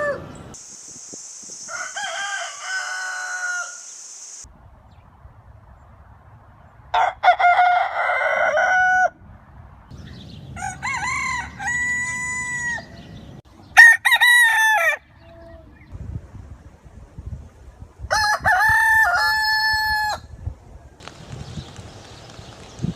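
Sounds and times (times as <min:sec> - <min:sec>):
roosters crowing: 0:00.0 - 0:00.5, 0:01.6 - 0:04.0, 0:06.9 - 0:09.2, 0:10.5 - 0:15.1, 0:18.1 - 0:20.3.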